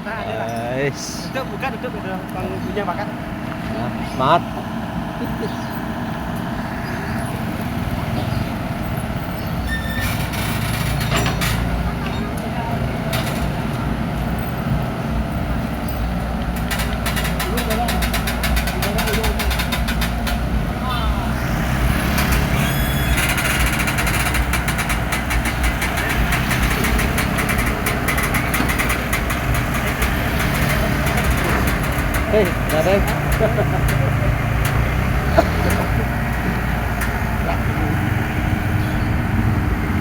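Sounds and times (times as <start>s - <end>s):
excavator diesel engine rumble: 0.0s - 40.0s
sharp clattering knocks: 7.6s - 12.3s, 15.8s - 40.0s
rapid irregular clicking: 15.6s - 37.7s.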